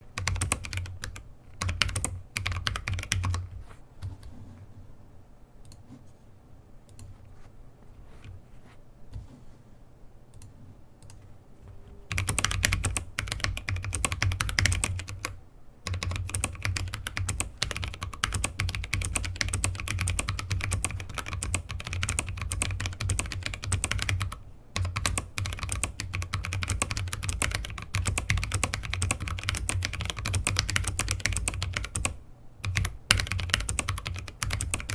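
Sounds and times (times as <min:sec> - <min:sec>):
mechanical keyboard typing: 0:00.2 - 0:04.2, 0:12.1 - 0:34.9.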